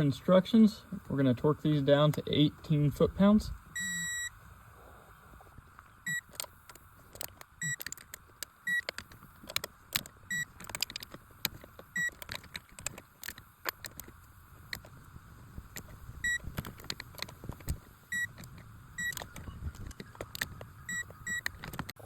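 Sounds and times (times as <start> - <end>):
short electronic beeps: 3.8 - 4.3, 6.0 - 6.3, 7.6 - 7.9, 8.7 - 8.9, 18.1 - 18.3, 20.9 - 21.5.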